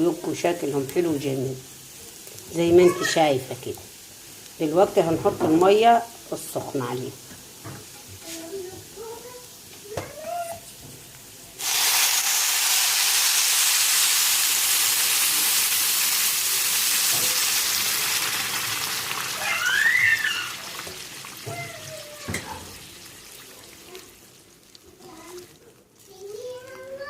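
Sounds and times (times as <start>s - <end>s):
loud hiss and sizzle: 0.0s - 25.5s
water pouring into hot pot: 11.6s - 26.4s.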